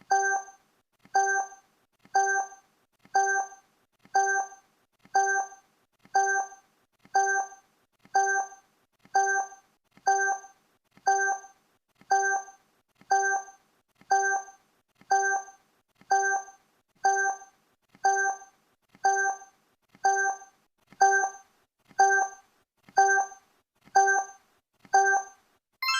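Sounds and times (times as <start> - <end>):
electronic timer blips: 0.1 - 0.6, 1.2 - 1.6, 2.2 - 2.6, 3.2 - 3.6, 4.2 - 4.6, 5.2 - 5.6, 6.2 - 7.6, 8.2 - 8.6, 9.2 - 10.5, 11.1 - 11.5, 12.1 - 23.4, 24.0 - 25.9.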